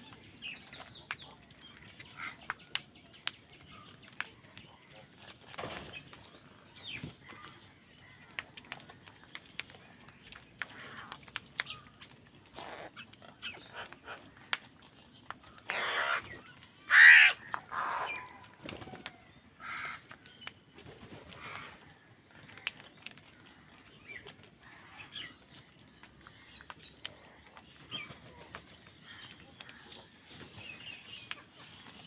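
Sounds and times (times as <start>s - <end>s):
small clicks and taps: 0.0s - 5.5s, 6.1s - 15.7s
crows cawing: 15.7s - 18.2s, 19.6s - 20.2s.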